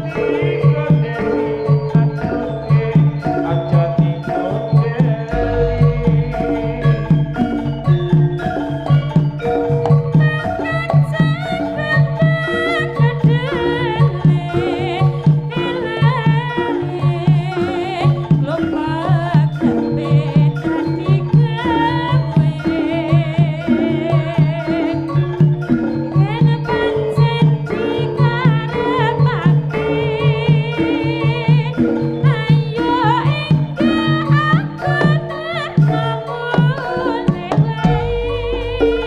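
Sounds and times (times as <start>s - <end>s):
drums: 0.0s - 39.0s
gamelan ensemble playing: 0.0s - 39.0s.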